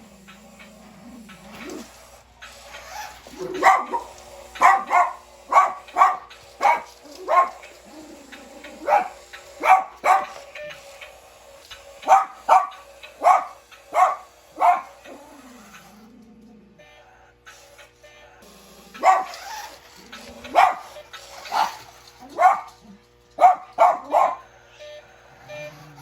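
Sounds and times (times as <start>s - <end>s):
small dog barking: 3.3s - 7.7s, 8.7s - 10.4s, 12.0s - 15.2s, 19.0s - 19.6s, 20.4s - 24.5s.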